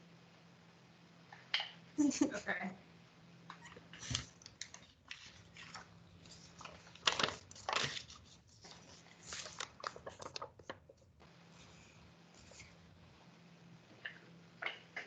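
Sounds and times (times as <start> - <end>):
paper rustling and creasing: 3.7 - 12.8.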